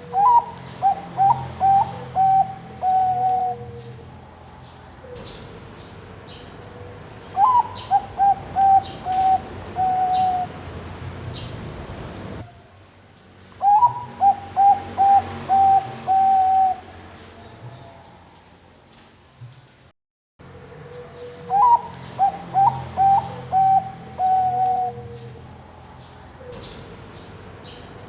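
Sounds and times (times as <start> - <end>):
dove cooing: 0.0 - 12.7, 13.6 - 18.5, 20.6 - 27.1.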